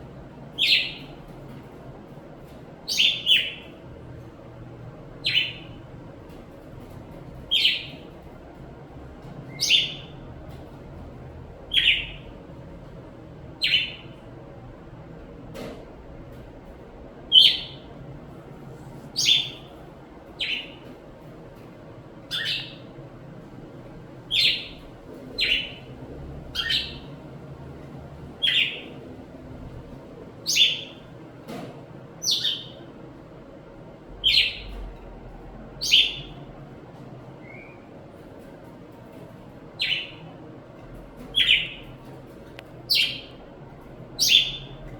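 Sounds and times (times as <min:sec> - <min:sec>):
bird chirping: 0:00.6 - 0:01.1, 0:02.9 - 0:03.7, 0:05.2 - 0:05.7, 0:07.5 - 0:08.1, 0:09.5 - 0:10.2, 0:11.7 - 0:12.3, 0:13.6 - 0:14.2, 0:17.3 - 0:17.9, 0:19.2 - 0:19.7, 0:20.4 - 0:20.9, 0:22.3 - 0:23.0, 0:24.3 - 0:25.9, 0:26.5 - 0:27.2, 0:28.4 - 0:29.0, 0:30.4 - 0:31.1, 0:32.2 - 0:32.8, 0:34.2 - 0:34.8, 0:35.8 - 0:36.5, 0:37.4 - 0:37.9, 0:39.8 - 0:40.3, 0:41.3 - 0:41.9, 0:42.9 - 0:43.4, 0:44.2 - 0:44.8.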